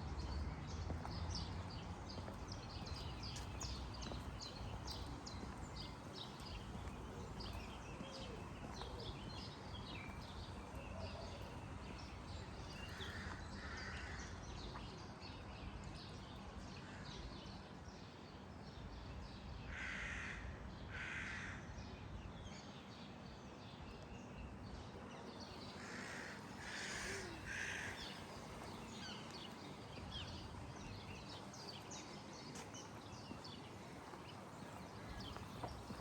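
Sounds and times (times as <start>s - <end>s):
light footsteps: 28.2s - 36.0s.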